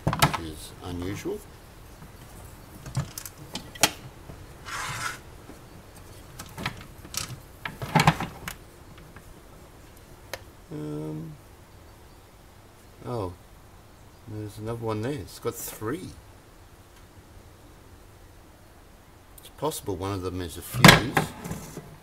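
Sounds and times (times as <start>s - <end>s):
clicks and knocks of appliance parts: 0.0s - 0.4s
short scrape: 4.6s - 5.2s.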